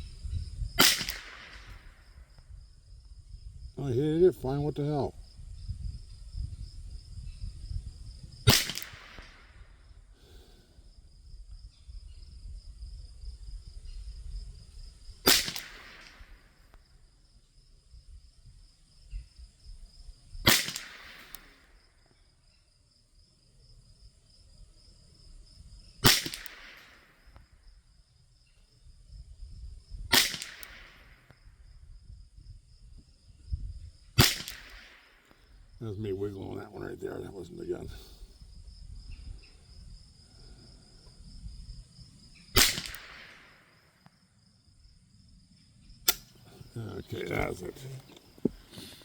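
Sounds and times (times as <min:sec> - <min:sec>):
rifle shots: 0:00.8 - 0:01.9, 0:08.5 - 0:09.4, 0:15.3 - 0:16.2, 0:20.5 - 0:21.6, 0:26.0 - 0:27.0, 0:30.1 - 0:31.1, 0:34.2 - 0:35.2, 0:42.6 - 0:43.7.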